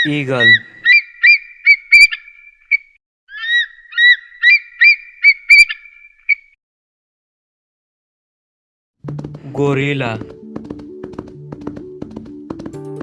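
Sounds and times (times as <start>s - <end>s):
eagle piping calls: 0.0s - 6.6s.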